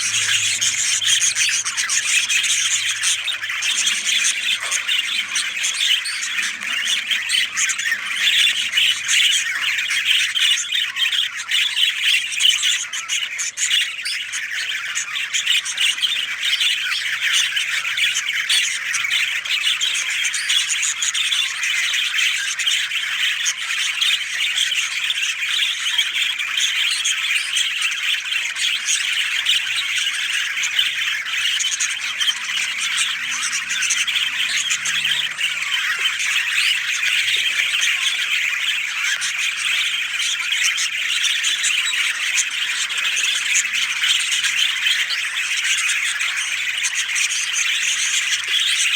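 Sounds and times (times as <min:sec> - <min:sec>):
birds chattering and squawking: 0:00.0 - 0:48.9.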